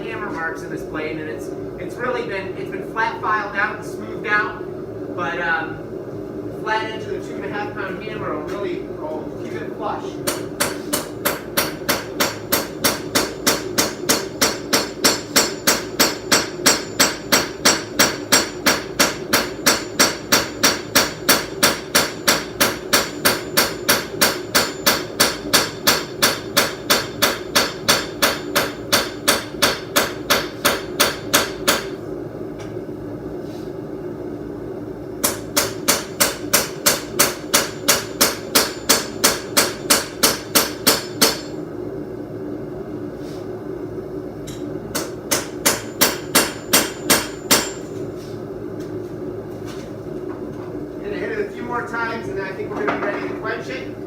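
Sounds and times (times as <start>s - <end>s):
hammer striking steel on anvil: 10.2s - 32.0s, 35.2s - 41.6s, 44.5s - 47.9s.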